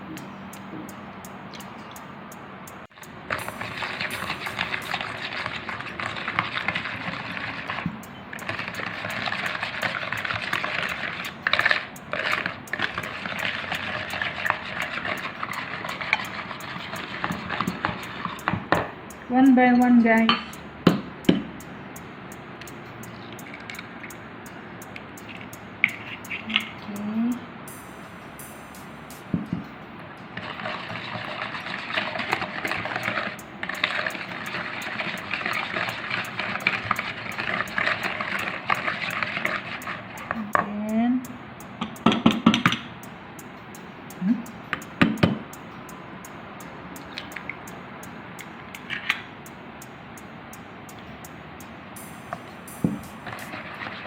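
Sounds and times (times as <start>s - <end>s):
utensil scraping in a mixing bowl: 3.3s - 18.8s, 25.2s - 26.8s, 30.4s - 40.6s, 53.0s - 54.0s.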